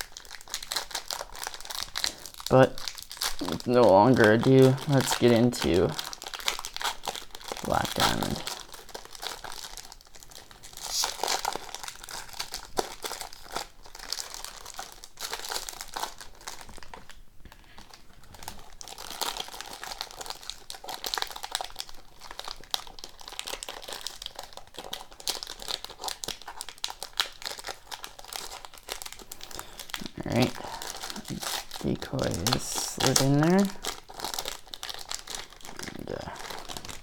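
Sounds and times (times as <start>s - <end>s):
wrapper crinkling and tearing: 0.0s - 37.0s.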